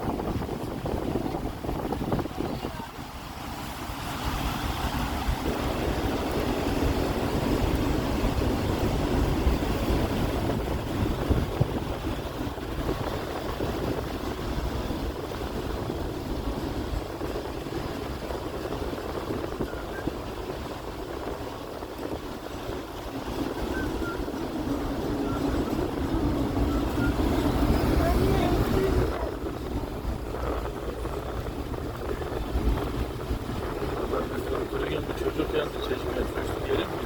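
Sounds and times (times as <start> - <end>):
storm wind buffeting microphone: 0.0 - 37.0.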